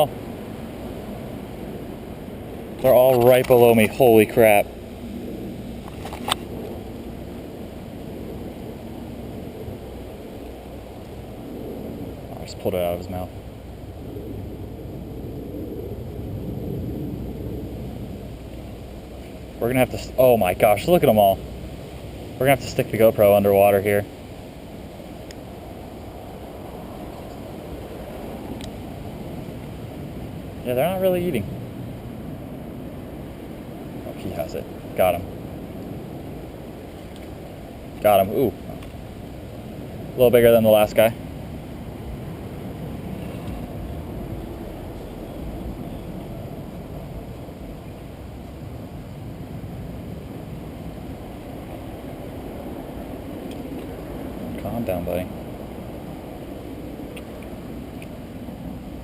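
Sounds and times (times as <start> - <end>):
creek water flowing: 0.0 - 15.0, 17.1 - 59.0
low rumbling noise: 0.0 - 59.0.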